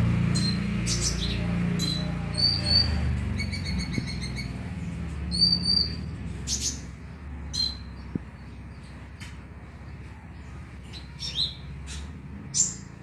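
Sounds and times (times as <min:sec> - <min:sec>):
sunbird chirping: 0:00.0 - 0:09.0.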